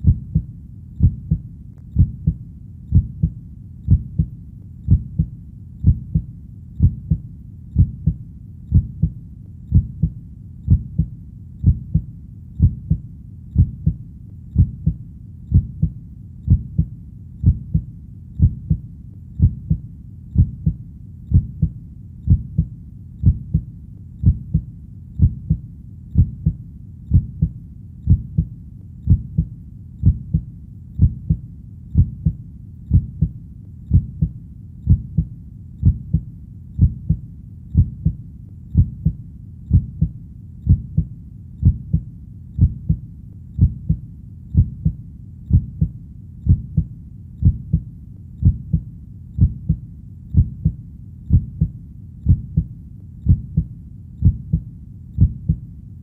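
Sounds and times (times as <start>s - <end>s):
slow heartbeat double thump: 0.0s - 1.4s, 4.9s - 7.2s, 14.6s - 18.8s, 19.4s - 19.8s, 26.2s - 28.5s, 29.1s - 31.4s, 32.0s - 34.3s, 34.9s - 36.2s, 36.8s - 37.2s, 37.8s - 38.2s, 38.8s - 40.1s, 40.7s - 42.0s, 42.6s - 43.0s, 43.6s - 44.0s, 44.6s - 45.9s, 46.5s - 48.8s, 49.4s - 49.8s, 50.4s - 52.7s, 53.3s - 54.6s, 55.2s - 55.6s.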